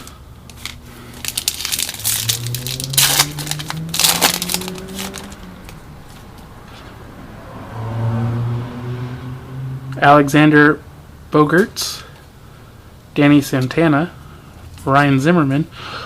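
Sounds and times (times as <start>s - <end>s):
foil wrapper crinkling and tearing: 0.5s - 5.8s.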